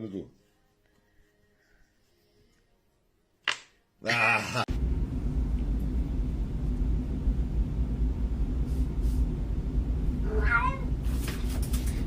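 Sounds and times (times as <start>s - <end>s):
steady low rumble: 4.7s - 11.2s
cat meowing: 10.2s - 11.0s.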